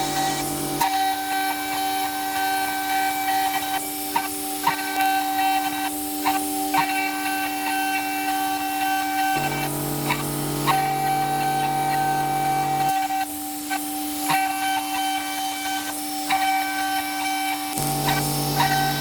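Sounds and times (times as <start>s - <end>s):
router machine whine: 0.0s - 3.7s, 8.3s - 19.0s.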